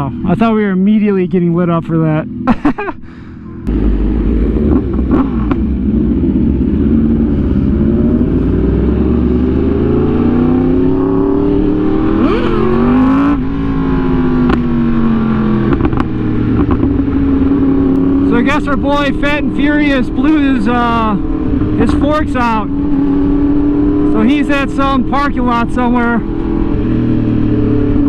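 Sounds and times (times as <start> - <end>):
superbike engine accelerating: 2.1 - 28.0.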